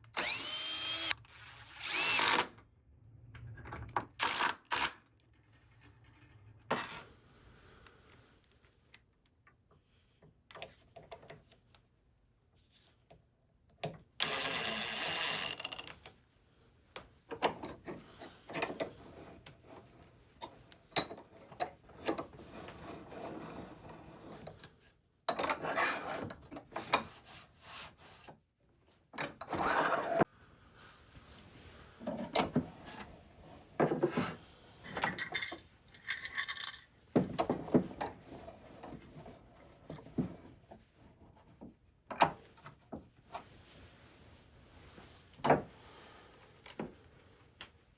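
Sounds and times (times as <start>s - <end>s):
metal tools clinking and scraping: 34.9s - 36.9s.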